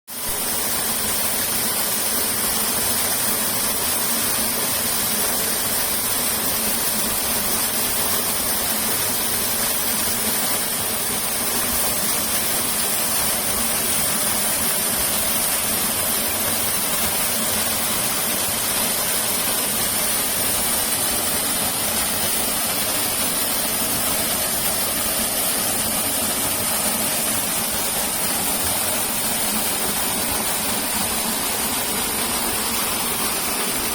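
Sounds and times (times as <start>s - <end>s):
waterfall rushing: 15.5s - 33.9s.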